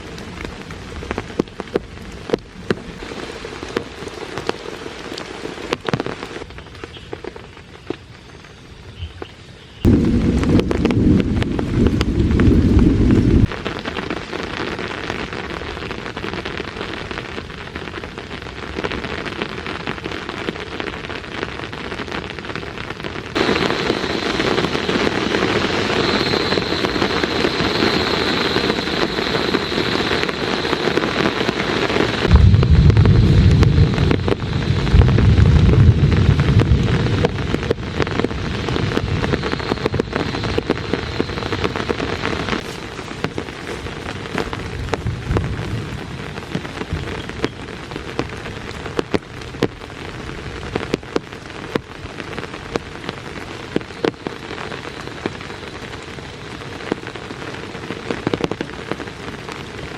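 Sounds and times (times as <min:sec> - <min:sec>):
rain pattering on surfaces: 0:00.0 - 0:59.9
heavy low rumbles: 0:09.9 - 0:13.5, 0:23.4 - 0:37.6.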